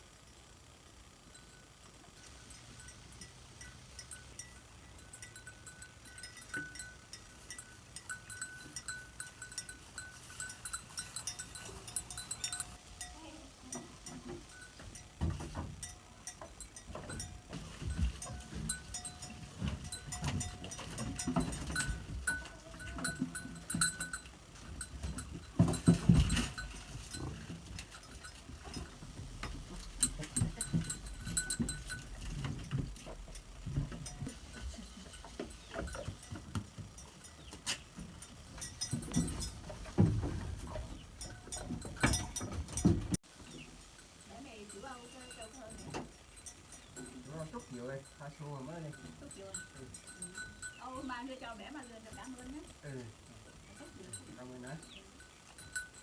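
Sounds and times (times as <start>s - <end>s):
clinks and knocks: 2.5s - 43.7s, 44.7s - 51.2s
goats calling: 29.6s - 39.9s.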